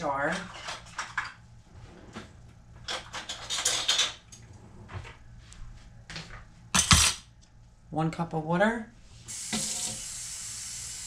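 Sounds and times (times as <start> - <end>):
objects knocking and clattering: 2.1 - 4.4, 6.3 - 7.3.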